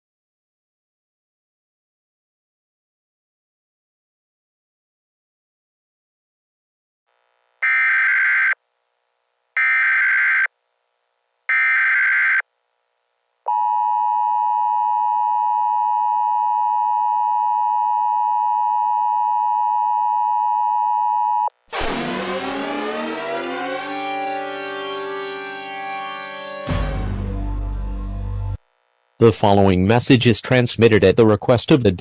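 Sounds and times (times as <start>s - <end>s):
sweeping siren-like sound: 21.7s - 27.2s.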